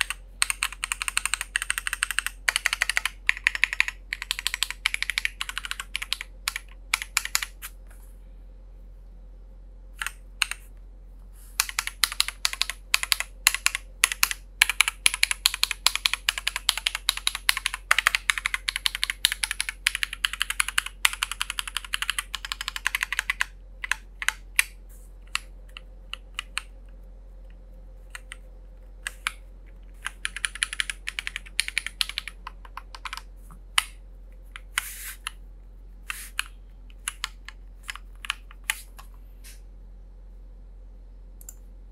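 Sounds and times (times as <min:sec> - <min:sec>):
typing on mechanical keyboard: 0:00.0 - 0:07.7, 0:11.6 - 0:27.0, 0:28.1 - 0:33.9, 0:36.1 - 0:39.1.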